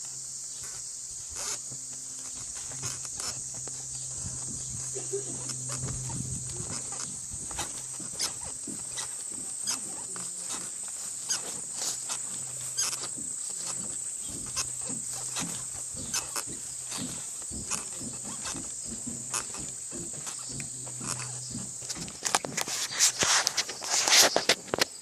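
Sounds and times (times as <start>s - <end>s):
animals clicking and knocking: 0.0s - 25.0s
high-pitched buzz: 0.1s - 23.2s.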